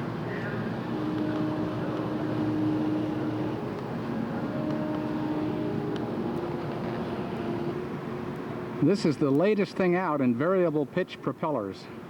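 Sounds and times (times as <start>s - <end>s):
faint steady tones: 0.0s - 9.4s
background hum and hiss: 0.0s - 12.0s.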